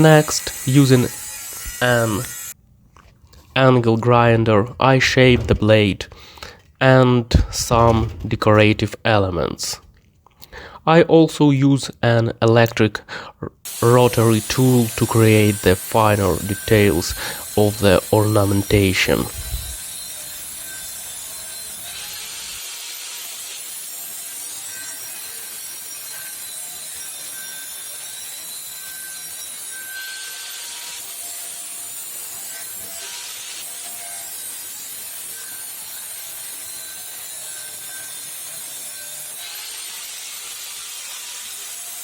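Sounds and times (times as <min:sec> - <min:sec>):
rotary tool grinding steel: 0:00.0 - 0:02.6, 0:13.7 - 0:42.0.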